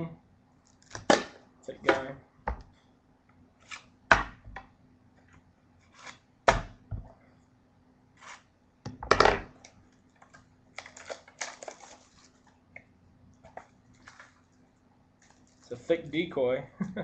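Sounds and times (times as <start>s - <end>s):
packaging rustling and scraping: 10.2s - 12.6s, 13.4s - 14.5s.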